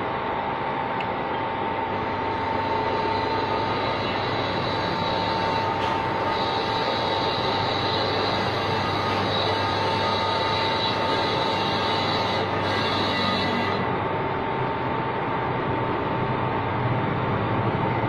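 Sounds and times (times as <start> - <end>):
metal lathe whining: 2.0 - 14.1.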